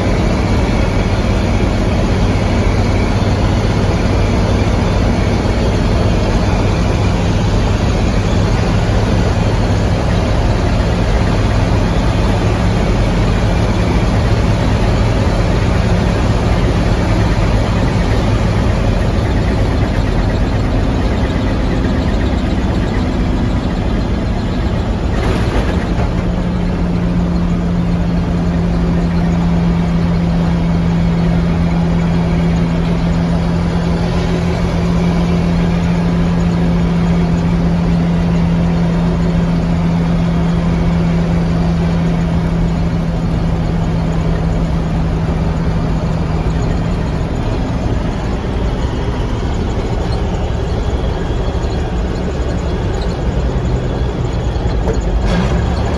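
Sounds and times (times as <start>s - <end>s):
truck diesel engine droning: 0.0s - 55.9s.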